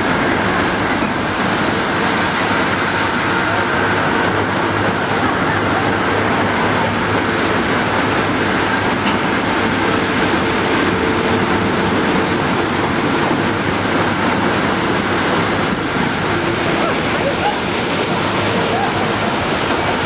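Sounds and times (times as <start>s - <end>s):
water rushing from riverboat: 0.0s - 20.0s.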